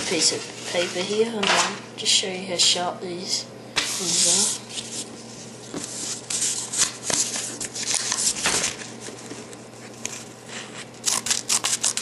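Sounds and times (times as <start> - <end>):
paper rustling and crinkling: 3.8 - 12.0.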